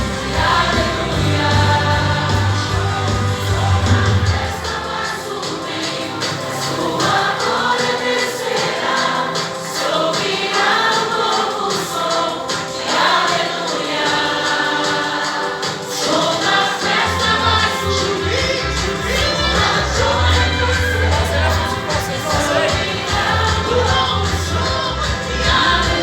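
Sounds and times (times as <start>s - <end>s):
heavy bass line: 0.0s - 4.6s
band accompaniment: 0.0s - 26.0s
choir singing gospel song: 0.0s - 26.0s.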